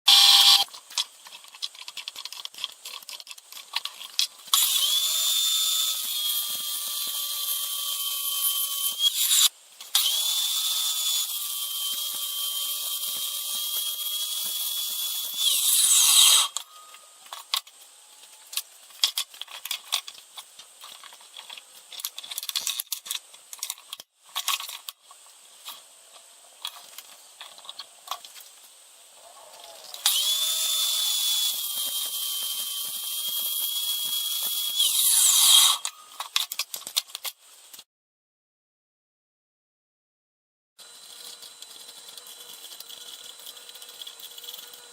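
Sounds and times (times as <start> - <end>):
electric drill-driver whining: 0.1 - 0.7, 4.5 - 17.0, 30.0 - 36.2
parts clicking and rattling: 0.7 - 4.7, 18.4 - 25.8.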